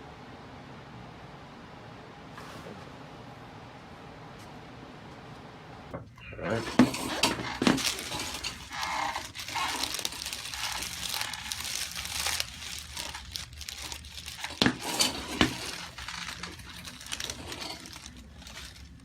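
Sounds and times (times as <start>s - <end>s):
crinkling rustling on treatment table: 6.5s - 19.0s.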